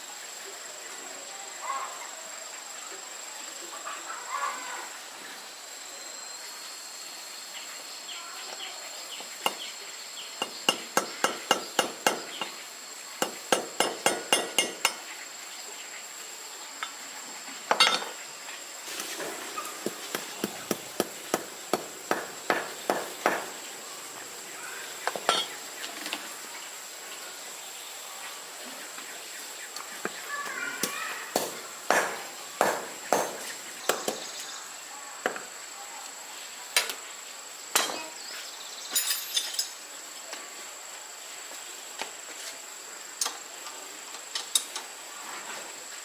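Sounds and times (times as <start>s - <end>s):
high insect drone: 0.0s - 46.0s
hammer striking: 13.2s - 15.0s, 19.8s - 23.5s, 31.4s - 34.2s.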